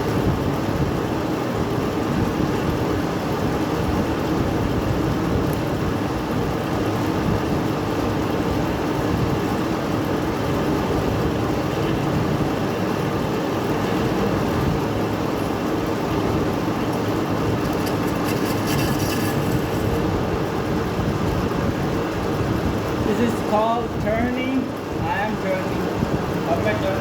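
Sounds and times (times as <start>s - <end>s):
metal lathe motor humming: 12.6s - 20.6s
scratchy cutting noise: 17.6s - 20.0s.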